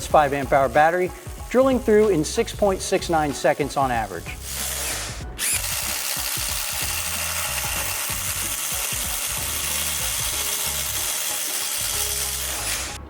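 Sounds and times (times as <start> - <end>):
impact driver hammering: 4.5 - 13.0.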